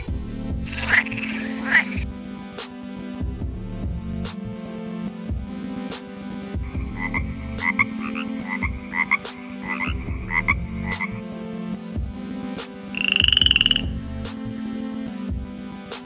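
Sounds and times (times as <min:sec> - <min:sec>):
background music with steady beat: 0:00.0 - 0:16.0
frog croaking: 0:00.6 - 0:02.0, 0:06.6 - 0:11.4, 0:12.9 - 0:14.1.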